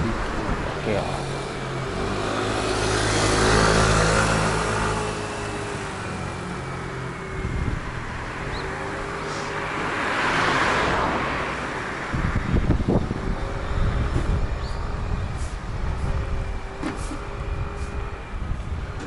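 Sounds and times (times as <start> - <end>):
wind rumbling on microphone: 0.0 - 6.1, 7.1 - 8.8, 11.8 - 19.0
vehicles passing close by: 0.0 - 19.0.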